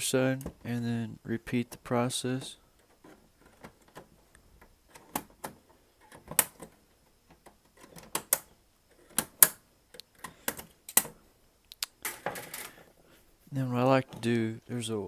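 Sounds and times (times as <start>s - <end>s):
plastic casing clicking and snapping: 2.8s - 12.3s.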